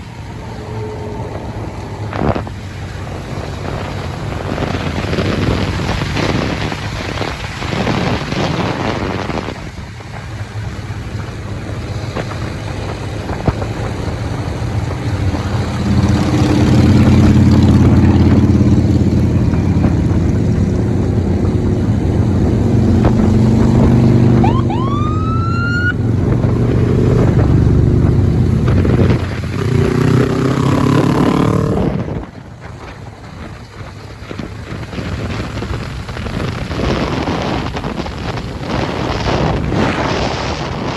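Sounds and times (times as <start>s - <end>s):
motorcycle engine running: 0.0s - 40.9s
wind noise on microphone: 0.0s - 40.9s.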